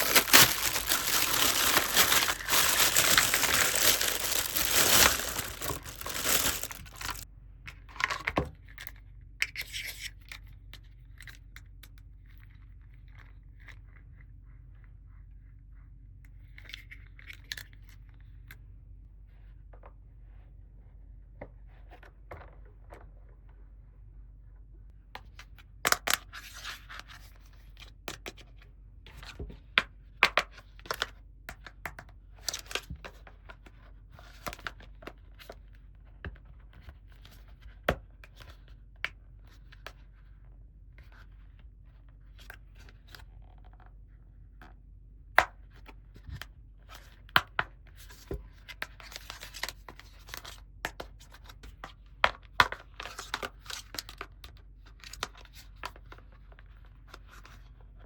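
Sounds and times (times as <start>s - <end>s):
packaging tearing and rustling: 0.0s - 7.2s.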